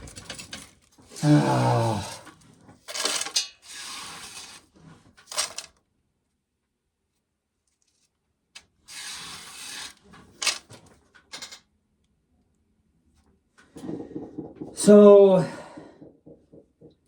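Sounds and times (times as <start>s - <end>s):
corn kernels rattling: 5.3s - 5.7s, 8.9s - 10.6s
kernels clicking: 5.3s - 5.7s, 8.9s - 10.6s.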